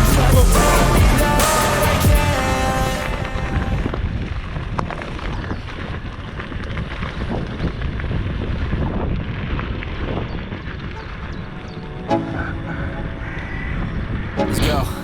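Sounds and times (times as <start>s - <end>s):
wind buffeting microphone: 3.2s - 11.9s.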